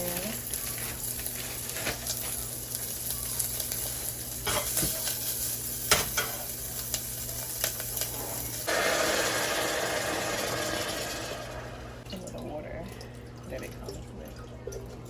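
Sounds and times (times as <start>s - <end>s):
sausage sizzling in a pan: 0.0s - 12.0s
water pouring into pan: 8.4s - 14.0s.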